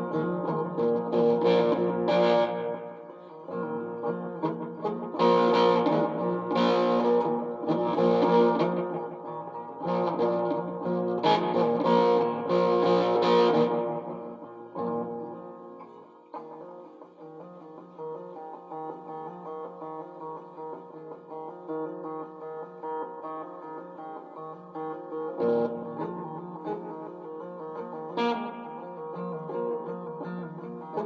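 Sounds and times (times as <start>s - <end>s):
guitar strummed chords: 0.0s - 22.6s.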